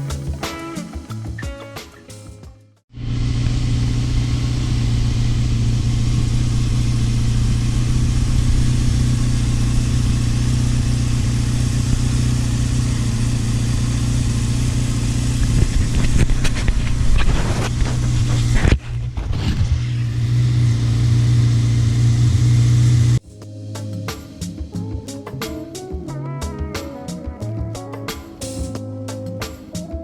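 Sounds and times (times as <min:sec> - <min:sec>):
motorcycle engine idling: 0:03.0 - 0:18.6.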